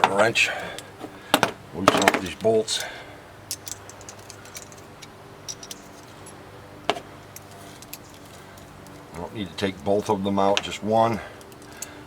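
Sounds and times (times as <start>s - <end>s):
wrench clicking on bolts: 3.5s - 6.4s, 11.4s - 12.0s.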